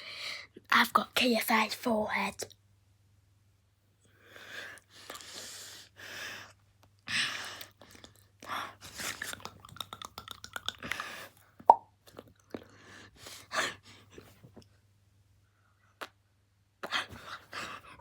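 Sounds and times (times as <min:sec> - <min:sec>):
lip and tongue clicks: 0:07.6 - 0:12.8
sharp mouth pop: 0:09.3 - 0:11.0, 0:11.7 - 0:11.9
breathy huffs and puffs: 0:16.8 - 0:18.0.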